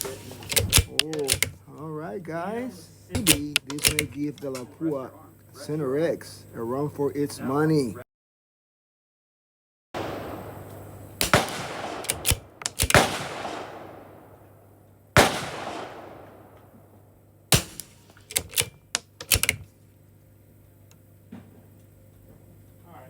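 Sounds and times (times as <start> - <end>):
lighter gunshot cracks: 10.0 - 18.3
rifle gunshots with echo: 10.0 - 18.3.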